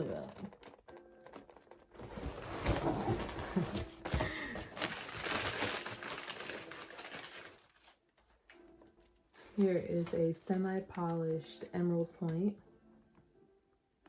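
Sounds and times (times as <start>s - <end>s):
packing material rustling: 0.0s - 8.6s.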